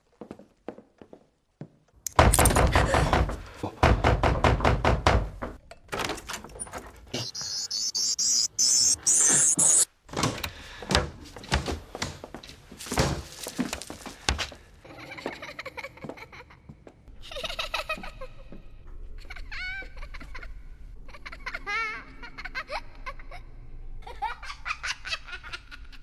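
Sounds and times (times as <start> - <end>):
high pulsing creak: 7.2 - 9.9.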